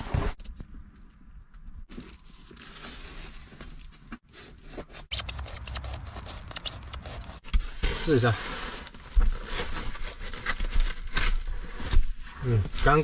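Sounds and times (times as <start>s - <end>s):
insulation sheet scraping and rustling: 4.3s - 13.0s.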